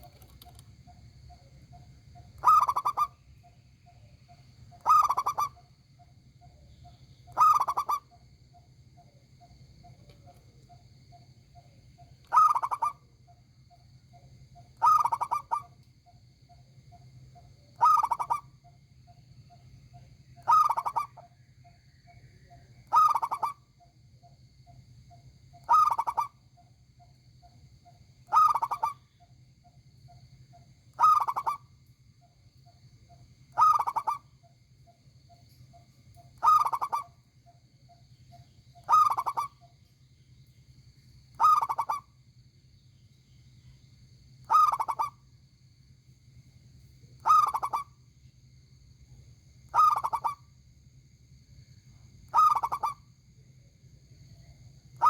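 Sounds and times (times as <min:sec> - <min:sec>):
dove cooing: 0:02.4 - 0:03.2, 0:04.8 - 0:05.6, 0:07.3 - 0:08.1, 0:12.3 - 0:13.1, 0:14.8 - 0:15.8, 0:17.8 - 0:18.5, 0:20.4 - 0:21.2, 0:22.8 - 0:23.6, 0:25.6 - 0:26.4, 0:28.3 - 0:29.0, 0:31.0 - 0:31.6, 0:33.6 - 0:34.3, 0:36.4 - 0:37.2, 0:38.8 - 0:39.6, 0:41.4 - 0:42.1, 0:44.5 - 0:45.2, 0:47.2 - 0:47.9, 0:49.7 - 0:50.4, 0:52.3 - 0:53.0.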